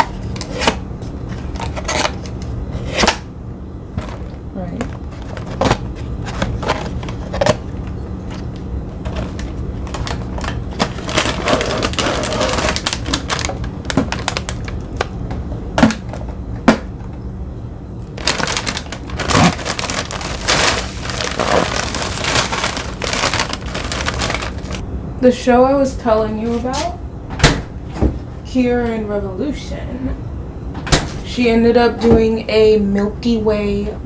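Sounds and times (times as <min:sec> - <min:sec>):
faint steady hum: 0:00.0 - 0:34.0
cookies rattling into container: 0:09.1 - 0:14.8, 0:18.2 - 0:24.8.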